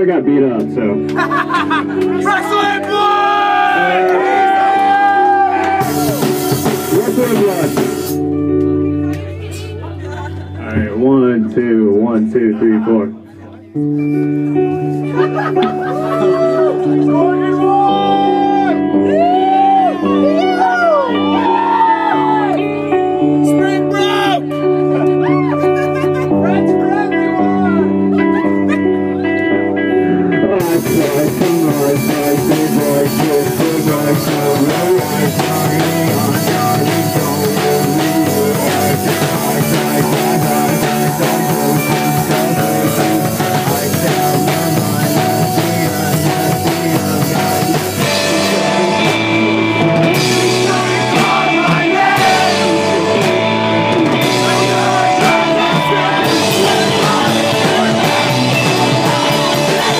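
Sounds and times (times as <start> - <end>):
bass guitar: 0.0 - 59.9
distorted guitars: 0.0 - 59.9
drum kit: 0.6 - 8.8, 30.6 - 59.9.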